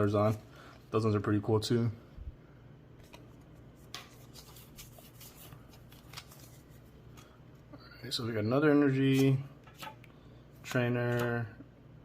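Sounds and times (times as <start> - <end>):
trading cards rustling and clicking: 3.0 - 7.4, 8.9 - 11.4.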